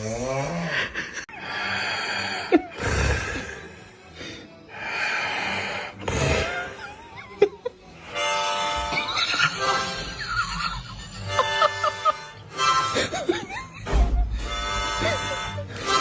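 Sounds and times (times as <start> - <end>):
person snoring: 0.0 - 6.9
background music: 0.0 - 16.0.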